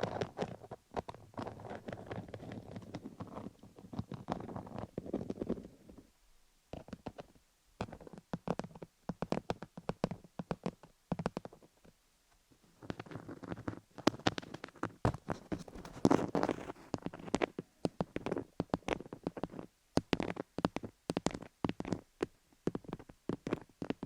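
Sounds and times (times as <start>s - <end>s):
roller crackly clicking on microphone: 0.0s - 5.9s, 12.8s - 24.0s.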